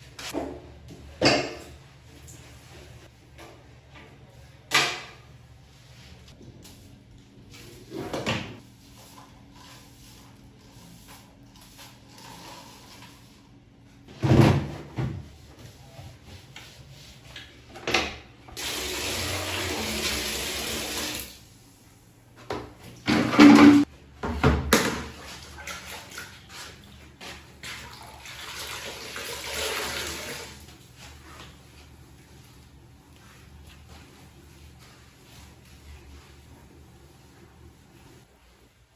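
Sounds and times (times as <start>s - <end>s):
water running: 18.6s - 21.4s, 25.0s - 31.1s.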